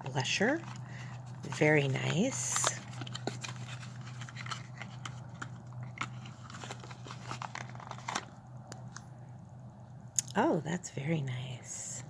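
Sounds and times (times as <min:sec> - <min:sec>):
steady low hum: 0:00.0 - 0:12.0
packaging clicks and crinkles: 0:00.5 - 0:09.1.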